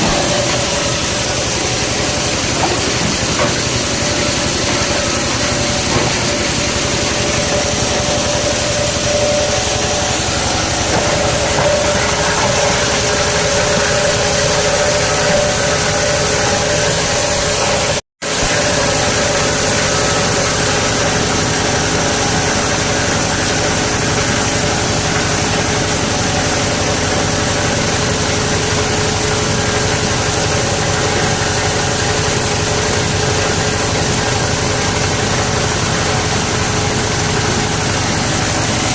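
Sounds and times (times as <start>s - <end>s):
plastic crusher machine running: 0.0s - 38.9s.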